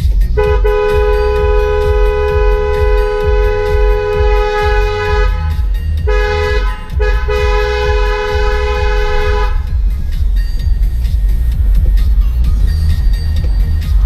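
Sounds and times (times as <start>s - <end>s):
low rumble: 0.0s - 14.0s
car horn honking: 0.3s - 9.8s.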